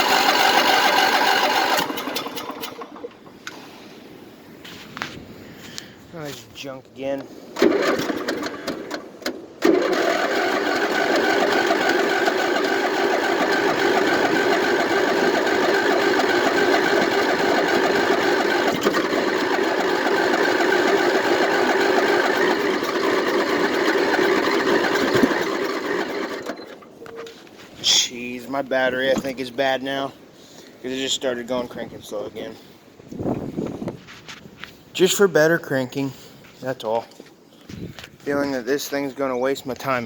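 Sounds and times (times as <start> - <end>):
starter motor cranking engine: 0.0 - 3.7, 7.6 - 27.2.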